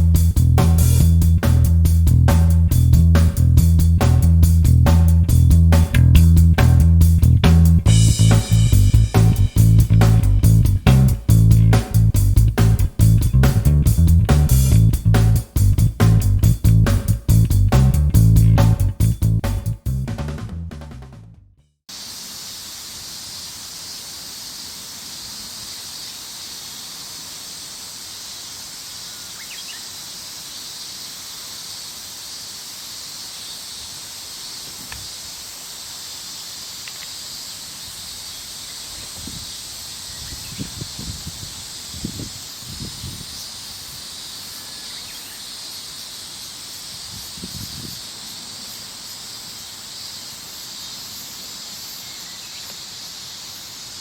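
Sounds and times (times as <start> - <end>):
low rumbles: 0.0 - 21.4
insects chorus: 21.9 - 54.0.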